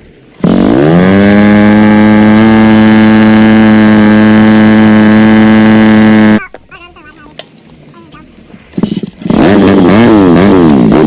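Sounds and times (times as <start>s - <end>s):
dirt bike engine revving high: 0.4s - 6.4s, 8.8s - 11.0s.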